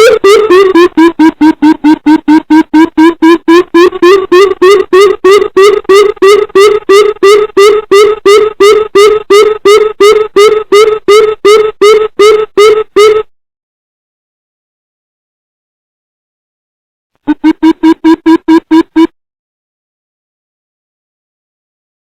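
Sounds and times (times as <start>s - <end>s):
coucal deep hooting calls: 0.0s - 13.3s.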